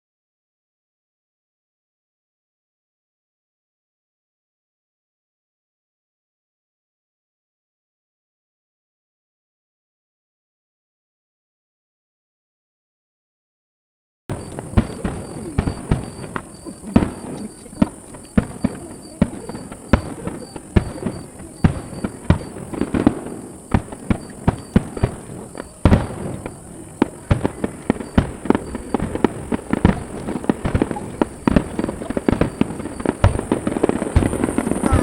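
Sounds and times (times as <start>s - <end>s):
fireworks bursting: 14.3s - 35.0s.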